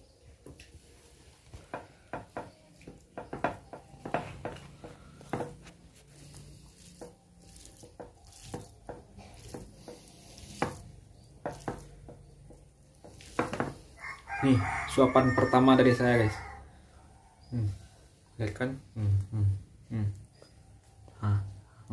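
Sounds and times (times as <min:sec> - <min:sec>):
utensil scraping a plate: 0:04.4 - 0:12.1.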